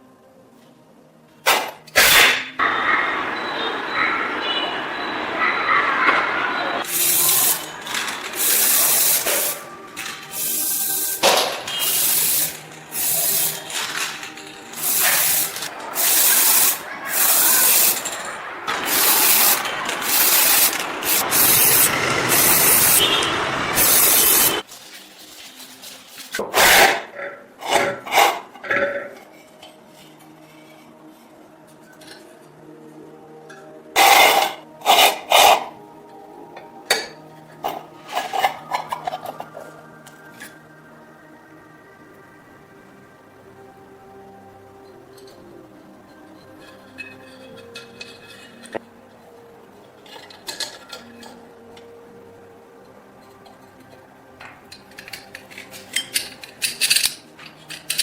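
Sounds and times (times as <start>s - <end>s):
hissing spray bursts: 6.8s - 14.1s, 14.7s - 24.6s
metal parts clicking: 6.9s - 22.9s, 50.0s - 51.4s, 54.7s - 58.0s.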